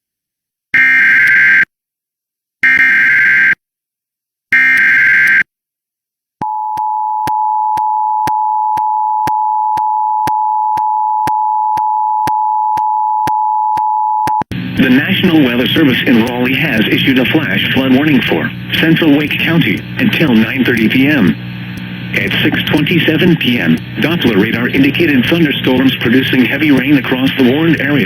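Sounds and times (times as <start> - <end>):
harsh buzzing data bursts: 14.4 - 28.0.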